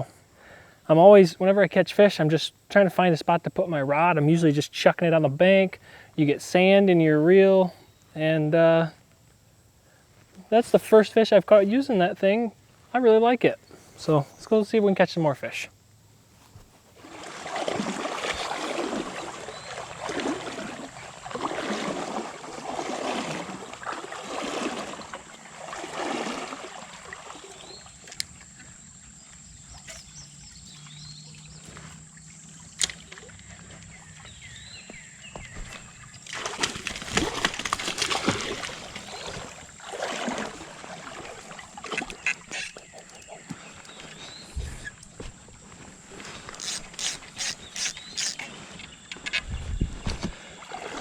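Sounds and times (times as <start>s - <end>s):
steady high-pitched whine: 0.0s - 17.1s
wading through shallow water: 16.7s - 51.0s.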